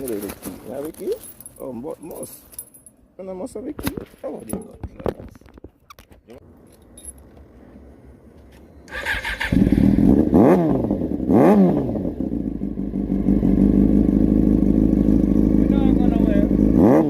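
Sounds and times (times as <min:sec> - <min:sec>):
motorcycle engine starting and revving: 0:08.8 - 0:17.0.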